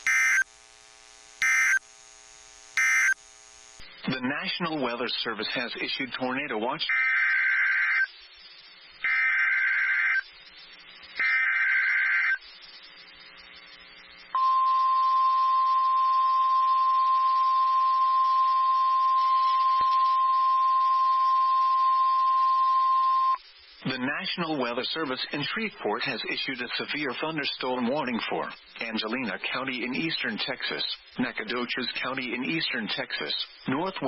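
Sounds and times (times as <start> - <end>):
steady warning alarm tone: 0.0 - 0.6, 1.2 - 1.8, 2.6 - 3.8
digital data bursts: 0.0 - 14.3.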